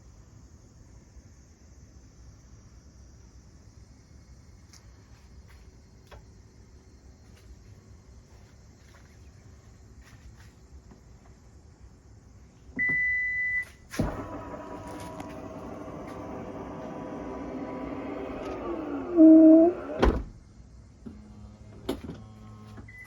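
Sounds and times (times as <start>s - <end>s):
liftgate motor humming: 13.9s - 20.4s, 21.0s - 23.0s.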